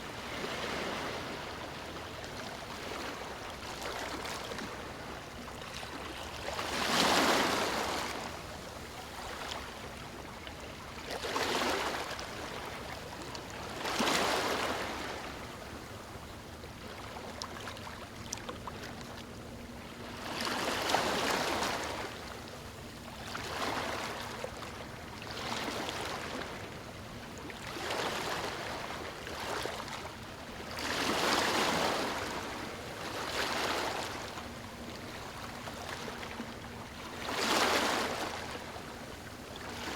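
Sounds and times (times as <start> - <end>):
waves breaking on stony shore: 6.5 - 8.2, 30.8 - 34.2, 37.1 - 38.4.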